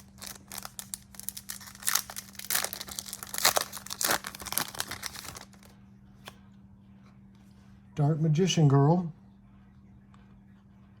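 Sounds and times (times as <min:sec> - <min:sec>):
wrapper crinkling and tearing: 0:00.0 - 0:05.7.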